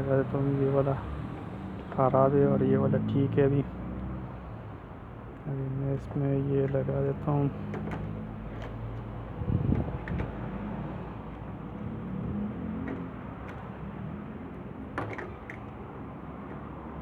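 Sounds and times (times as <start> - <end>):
plastic part clicks and knocks: 9.7 - 10.4, 12.8 - 13.7, 14.9 - 15.8.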